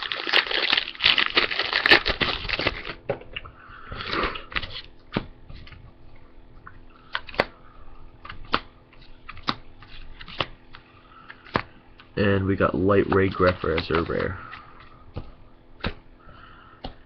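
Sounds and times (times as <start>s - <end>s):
foil wrapper crinkling: 0.0s - 3.0s, 13.1s - 15.0s.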